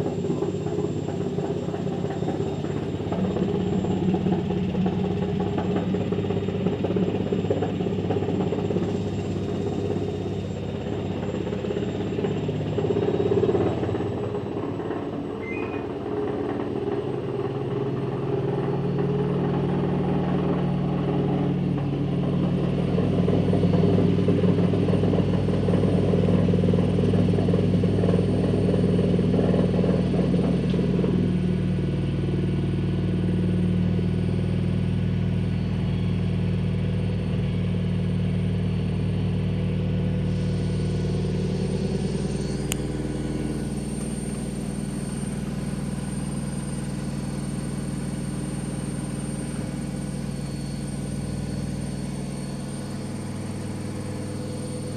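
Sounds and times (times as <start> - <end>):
washing machine spinning: 0.0 - 54.9.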